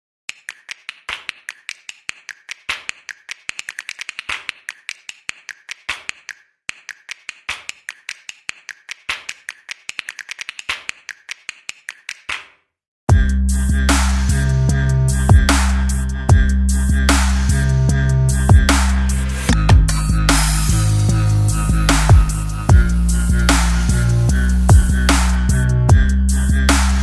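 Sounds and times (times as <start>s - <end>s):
rapid sharp clicks: 0.3s - 12.4s.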